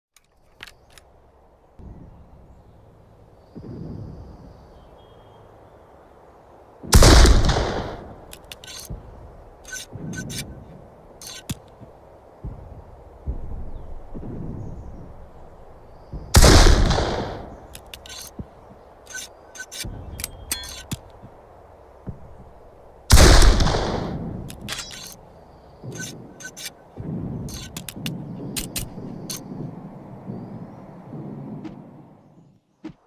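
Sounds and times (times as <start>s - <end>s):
metallic clicks of gun handling: 0.2s - 1.1s, 8.2s - 9.0s, 9.6s - 10.5s, 11.2s - 11.8s, 17.7s - 18.4s, 19.0s - 21.2s, 24.4s - 25.2s, 25.9s - 26.8s, 27.5s - 29.5s
rifle shots with rumbling tail: 6.8s - 8.3s, 13.2s - 17.7s, 23.1s - 25.2s.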